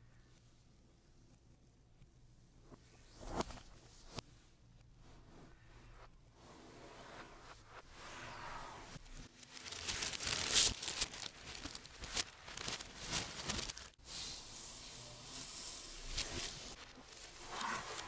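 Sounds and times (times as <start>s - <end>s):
packaging crinkling and tearing: 9.3s - 14.0s.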